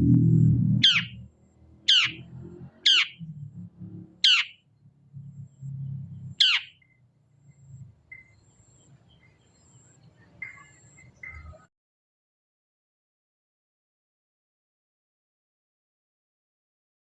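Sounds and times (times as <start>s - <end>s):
low rumble: 0.0s - 6.4s
shrike harsh calls: 0.8s - 1.2s, 1.9s - 2.2s, 2.8s - 3.2s, 4.2s - 4.6s, 6.4s - 6.8s.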